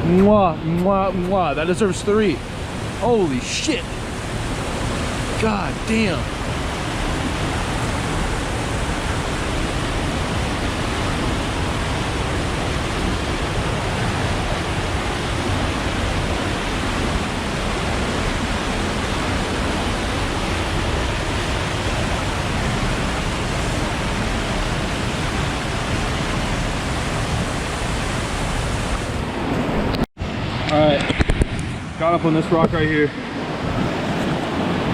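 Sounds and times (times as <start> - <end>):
waterfall rushing: 1.2 - 29.4.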